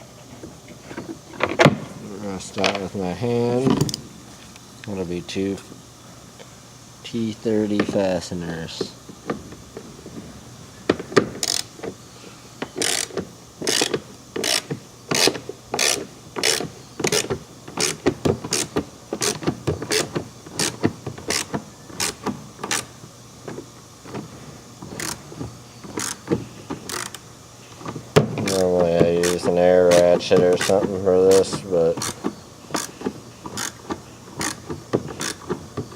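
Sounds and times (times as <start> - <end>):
hand ratchet clicking: 11.4 - 11.7, 12.6 - 22.9, 24.9 - 25.2, 25.8 - 27.2, 28.4 - 35.6.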